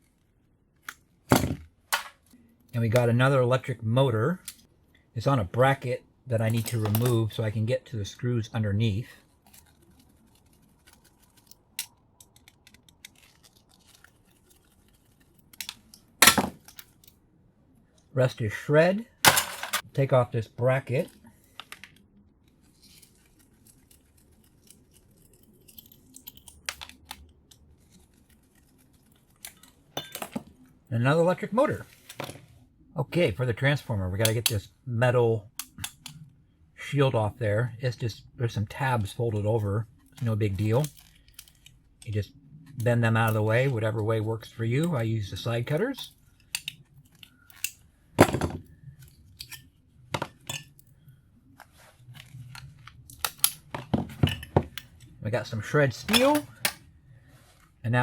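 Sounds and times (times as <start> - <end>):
small metal parts clicking and scraping: 9.1 - 17.2, 19.2 - 19.9, 21.0 - 30.7, 35.6 - 36.3, 39.6 - 43.7, 45.7 - 55.2, 56.0 - 57.7.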